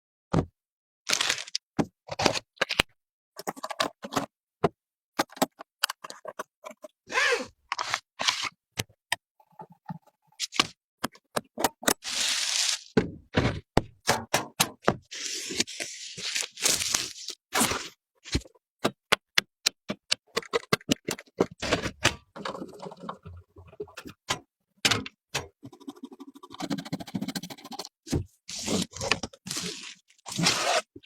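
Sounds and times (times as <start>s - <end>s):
computer parts clicking and knocking: 18.8s - 25.8s.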